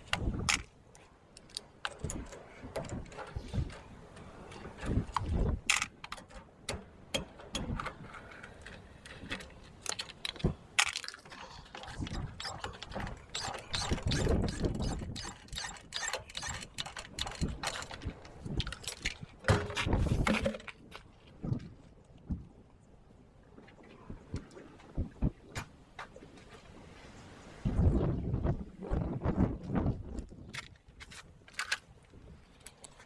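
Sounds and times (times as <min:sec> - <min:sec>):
dull rumbling handling noise: 0:00.0 - 0:22.5, 0:29.2 - 0:33.0
metallic clicks and clinks: 0:01.4 - 0:21.0, 0:30.6 - 0:33.0.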